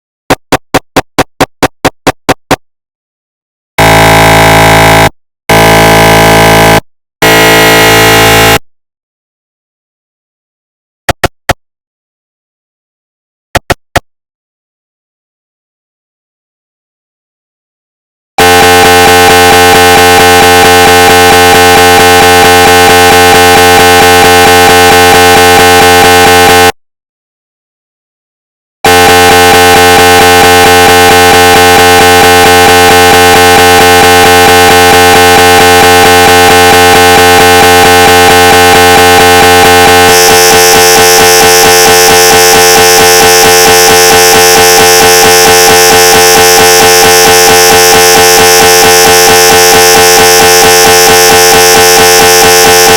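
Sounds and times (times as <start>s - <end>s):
mri scanner pulsing drone: 18.4s - 25.4s.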